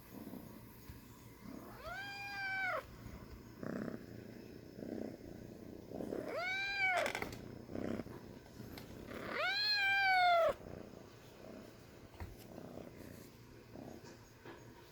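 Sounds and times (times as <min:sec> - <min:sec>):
kitten meowing: 0:01.7 - 0:02.8, 0:06.3 - 0:07.2, 0:09.3 - 0:10.6.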